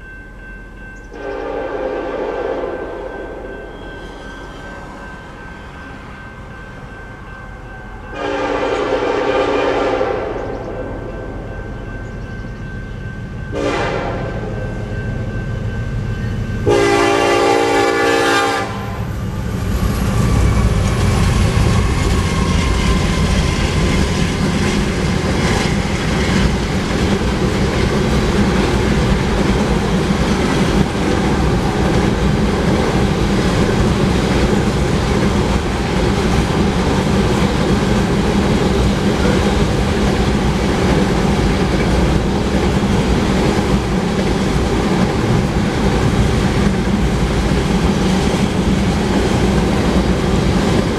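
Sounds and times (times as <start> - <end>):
train wheels rumbling: 0.0 - 50.9
locomotive horn: 1.1 - 3.4, 8.1 - 11.1, 13.5 - 14.6, 16.6 - 19.1
wheels clickety-clack on rails: 19.0 - 50.9.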